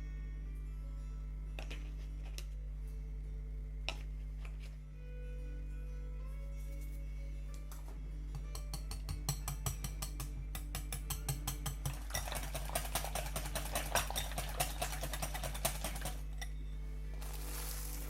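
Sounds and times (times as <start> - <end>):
quiet background music: 0.0 - 18.0
metal utensil clinking against bowl: 8.5 - 16.6.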